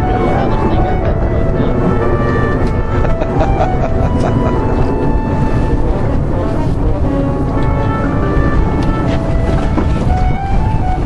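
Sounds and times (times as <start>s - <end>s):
background music held notes: 0.0s - 11.0s
boat rumble: 0.0s - 11.0s
wind rumble on microphone: 0.0s - 11.0s.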